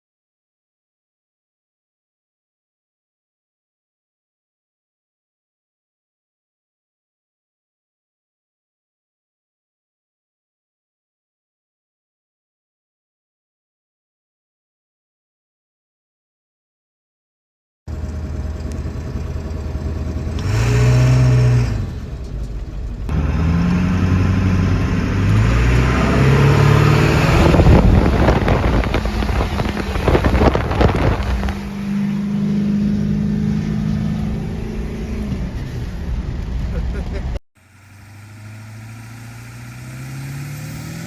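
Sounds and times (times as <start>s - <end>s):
diesel engine revving: 17.9s - 41.0s.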